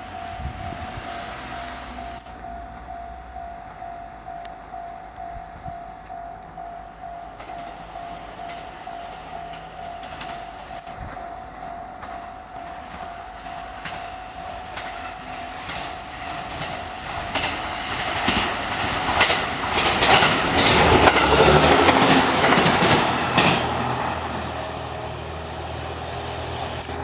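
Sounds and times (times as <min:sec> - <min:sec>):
train wheels clicking over rail joints: 0:00.0 - 0:24.6
level-crossing warning bell: 0:00.0 - 0:27.0.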